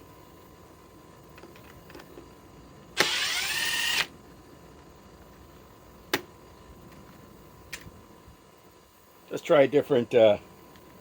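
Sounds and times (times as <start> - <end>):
impact driver motor whine: 3.0 - 4.1.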